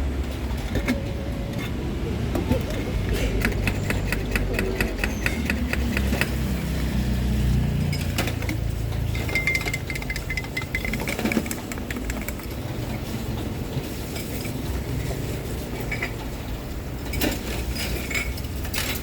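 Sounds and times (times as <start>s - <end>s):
low engine rumble: 0.0s - 19.0s
cups and utensils clinking: 7.8s - 13.0s, 14.0s - 16.5s, 17.1s - 19.0s.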